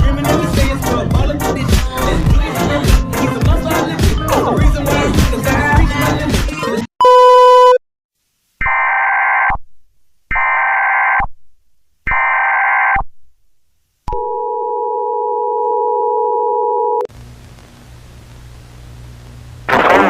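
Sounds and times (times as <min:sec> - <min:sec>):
loud electronic beep: 0:07.0 - 0:07.8.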